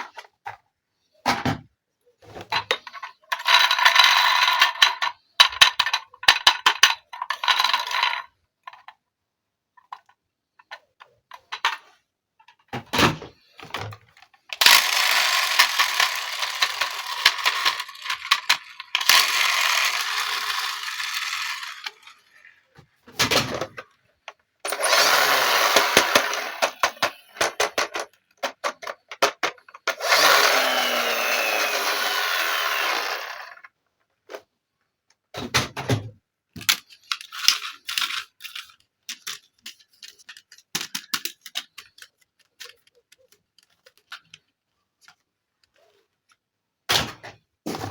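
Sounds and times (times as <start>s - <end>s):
small electric toy motor running: 14.6s - 22.4s, 24.7s - 27.5s, 29.9s - 33.6s
hard plastic clicking and clattering: 25.7s - 30.3s, 35.1s - 45.8s.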